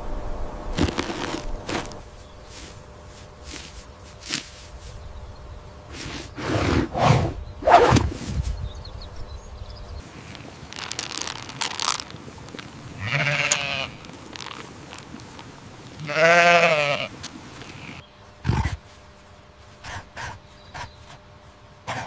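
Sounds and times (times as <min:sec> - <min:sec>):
clicks and crackles: 0:10.0 - 0:16.1
animal calling: 0:19.8 - 0:21.3.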